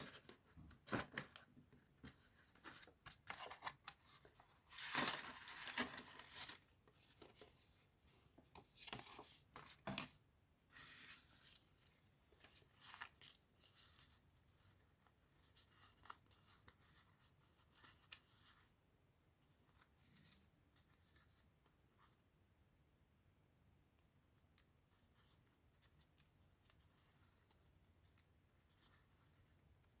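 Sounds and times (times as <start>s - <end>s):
paper rustling and crackling: 0.0s - 7.7s, 8.5s - 18.7s.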